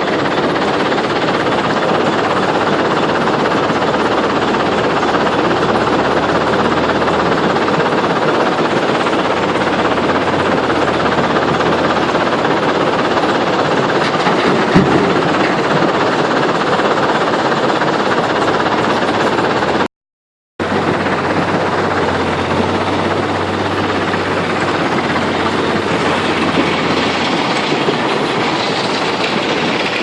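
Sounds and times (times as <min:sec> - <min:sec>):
heavy diesel machinery running: 0:00.0 - 0:19.9, 0:20.6 - 0:30.0.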